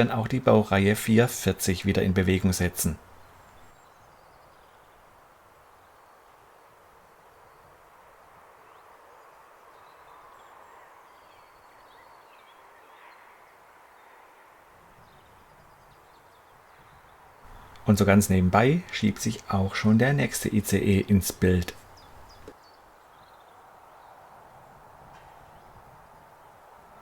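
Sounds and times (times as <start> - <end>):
birds chirping: 0.0 - 4.4, 17.5 - 22.6
low background hiss: 0.0 - 12.5, 15.1 - 24.6.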